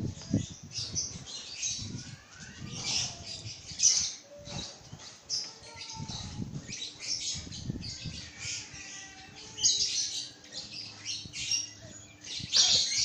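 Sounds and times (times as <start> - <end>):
bird squawking: 12.4 - 13.0.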